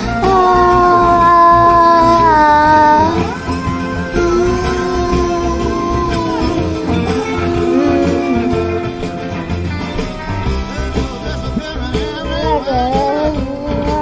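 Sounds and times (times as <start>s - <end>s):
live rock band with electric guitar: 0.0s - 14.0s.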